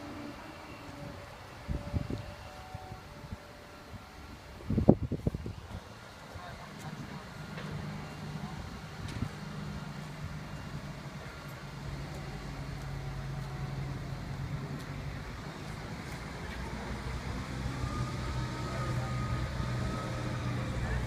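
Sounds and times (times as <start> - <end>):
faint high whine: 0.0 - 5.8
heavy crane engine running: 0.0 - 21.0.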